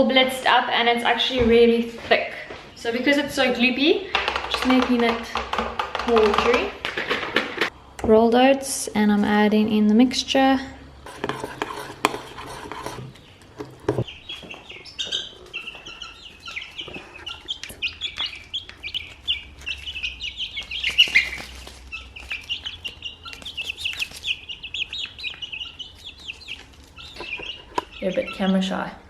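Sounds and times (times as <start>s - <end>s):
sharp knocks: 4.1s - 7.7s
bird chirping: 12.0s - 29.0s.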